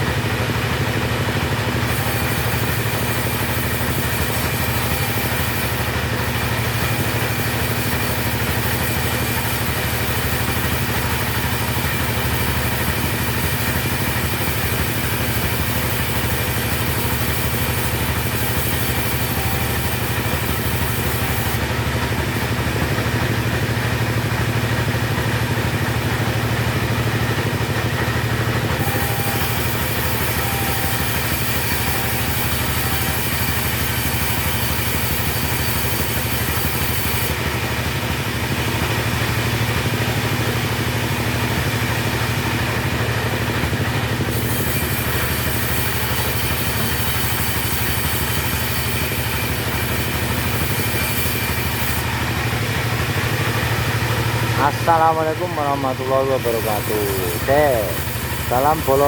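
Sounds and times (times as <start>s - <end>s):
chainsaw engine running: 0.0s - 59.0s.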